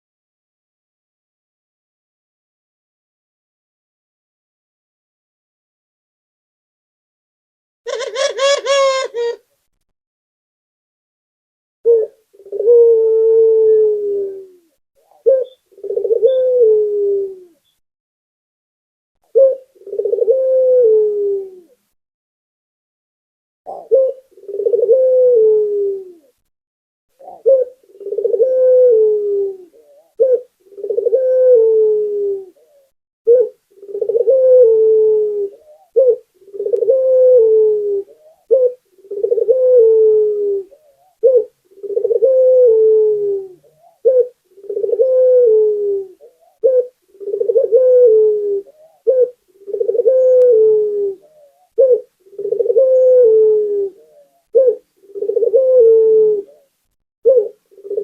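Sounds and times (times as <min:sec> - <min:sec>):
dove cooing: 0:07.9 - 0:09.4, 0:11.8 - 0:17.7, 0:19.2 - 0:21.9, 0:23.7 - 0:26.4, 0:27.2 - 0:58.0.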